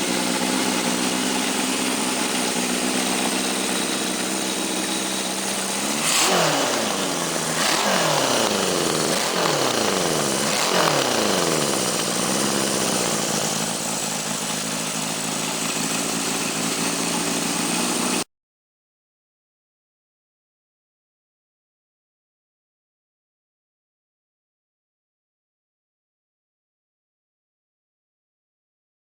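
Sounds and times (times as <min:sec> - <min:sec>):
motorcycle engine idling and revving: 0:00.0 - 0:18.3.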